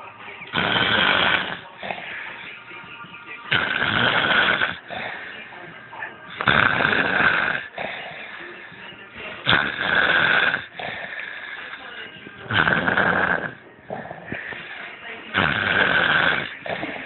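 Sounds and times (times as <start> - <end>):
rasping breaths: 0.0 - 17.0
man snoring: 0.5 - 2.2, 3.5 - 5.3, 6.4 - 8.4, 9.4 - 11.8, 12.5 - 14.6, 15.3 - 17.0.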